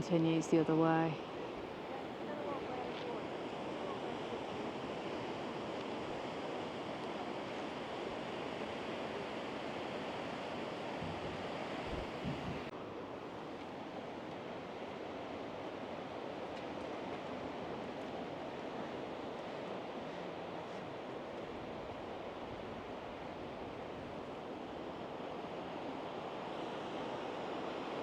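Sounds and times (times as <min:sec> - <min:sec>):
sea waves washing onto beach: 0:01.2 - 0:28.0
wind buffeting microphone: 0:11.0 - 0:12.7.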